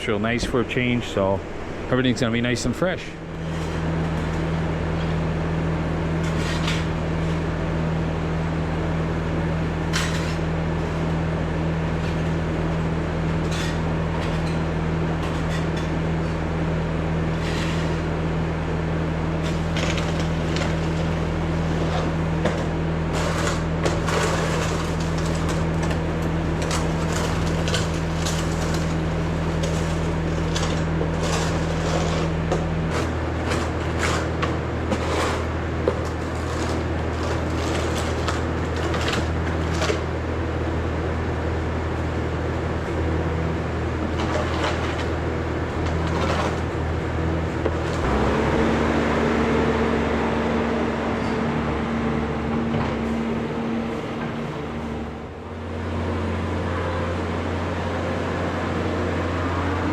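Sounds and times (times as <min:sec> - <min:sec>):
skid steer engine running: 0:00.0 - 0:59.9
bucket scraping floor: 0:17.3 - 0:18.1, 0:19.4 - 0:40.1, 0:44.0 - 0:45.2, 0:45.8 - 0:46.8.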